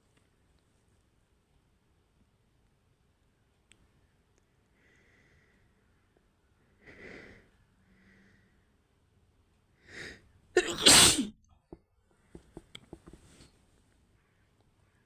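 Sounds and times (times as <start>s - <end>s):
woman sneezing: 10.6s - 11.3s.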